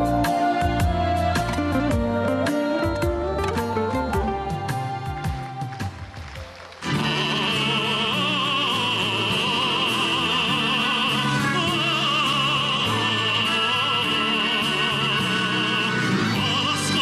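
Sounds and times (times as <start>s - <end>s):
operatic singing: 0.0s - 5.9s, 6.7s - 17.0s.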